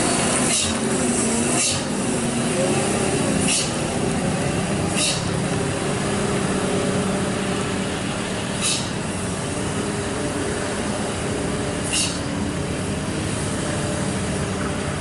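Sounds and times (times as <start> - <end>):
diesel engine running loud: 0.0 - 15.0
short air hisses: 3.4 - 3.8, 4.9 - 5.3, 8.6 - 9.0, 11.8 - 12.3.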